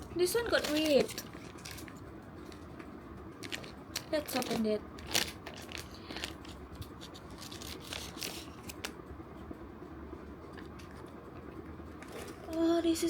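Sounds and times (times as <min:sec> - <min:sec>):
packaging tearing and rustling: 0:00.4 - 0:02.0, 0:03.4 - 0:09.0.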